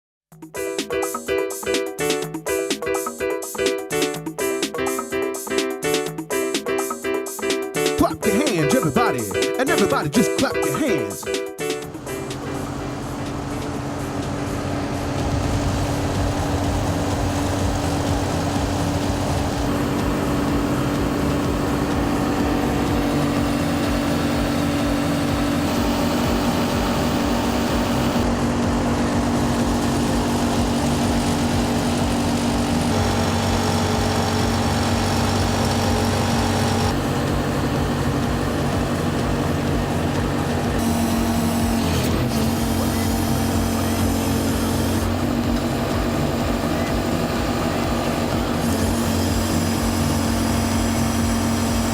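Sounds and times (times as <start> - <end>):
pile driver engine running: 8.0 - 51.9.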